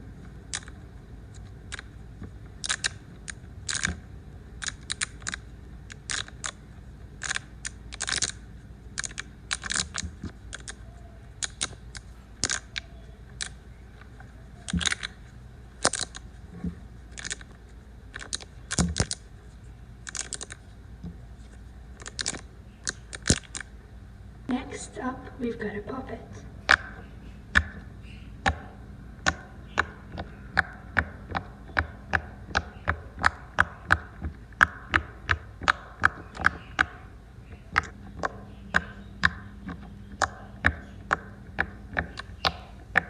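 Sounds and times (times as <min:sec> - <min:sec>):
plastic fidget toy clicking: 0:02.6 - 0:04.0, 0:04.6 - 0:06.6, 0:07.2 - 0:08.4, 0:09.0 - 0:10.8, 0:11.4 - 0:13.6, 0:14.7 - 0:15.2, 0:17.1 - 0:17.5, 0:18.1 - 0:19.2, 0:20.0 - 0:20.6.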